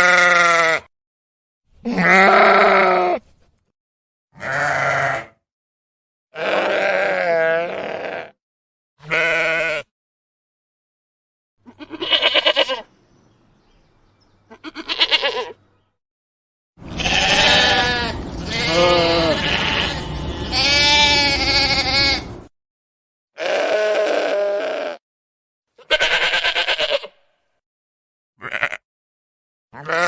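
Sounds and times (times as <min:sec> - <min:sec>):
lamb bleating: 0:00.0 - 0:00.9, 0:01.8 - 0:03.2, 0:04.4 - 0:05.4, 0:06.4 - 0:08.4, 0:09.0 - 0:09.9, 0:11.6 - 0:12.9, 0:14.5 - 0:15.6, 0:16.9 - 0:22.3, 0:23.4 - 0:25.0, 0:25.8 - 0:27.3, 0:28.4 - 0:28.8, 0:29.8 - 0:30.0.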